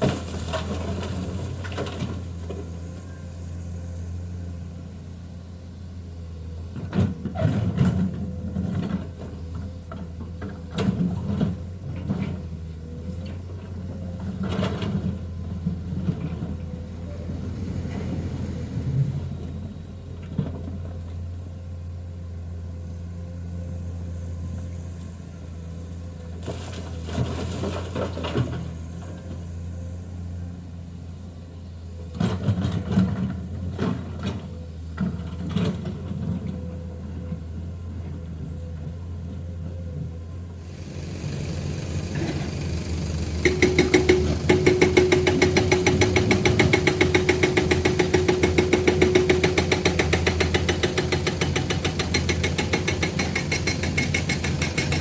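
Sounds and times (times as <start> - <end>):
diesel machinery droning: 0.0 - 55.0
fast mechanical rattle: 40.7 - 55.0
clattering knocks: 43.1 - 55.0.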